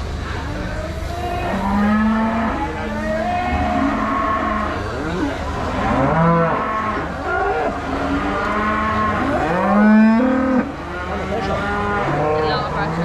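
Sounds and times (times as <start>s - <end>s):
cattle mooing: 0.5s - 13.0s.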